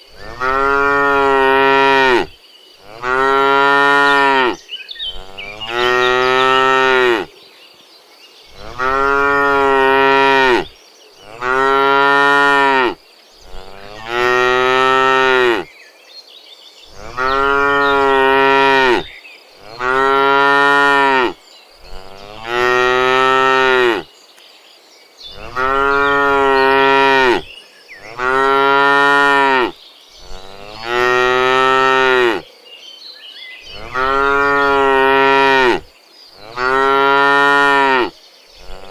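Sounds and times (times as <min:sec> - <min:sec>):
cattle mooing: 0:00.3 - 0:07.3, 0:08.6 - 0:10.7, 0:11.3 - 0:15.7, 0:17.0 - 0:24.1, 0:25.4 - 0:27.4, 0:28.1 - 0:29.7, 0:30.3 - 0:32.4, 0:33.7 - 0:35.8, 0:36.4 - 0:38.9.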